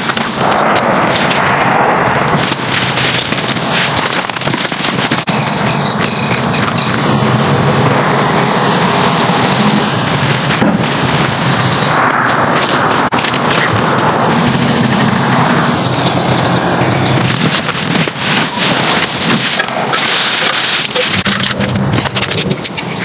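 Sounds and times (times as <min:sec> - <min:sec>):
sharp cracks and pops: 0:00.0 - 0:07.2, 0:10.0 - 0:23.0
heavy rain pattering: 0:00.0 - 0:23.0.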